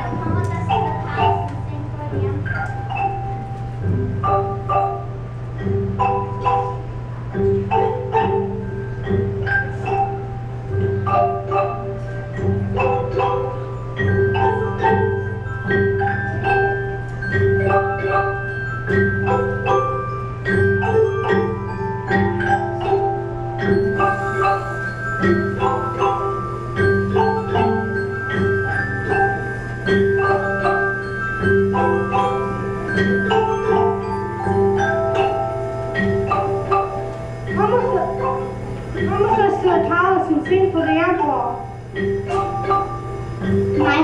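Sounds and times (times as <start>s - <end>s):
xylophones and glockenspiels playing: 0.0s - 44.0s.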